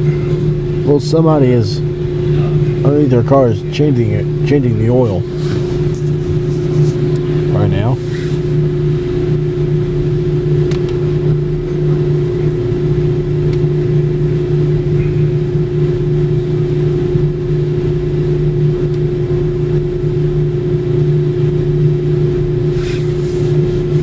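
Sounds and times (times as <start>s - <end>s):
machinery humming: 0.0s - 24.0s.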